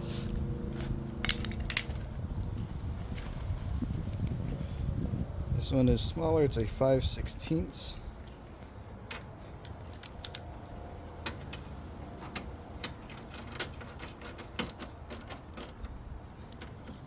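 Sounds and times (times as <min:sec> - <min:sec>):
low rumble: 0:00.0 - 0:06.0.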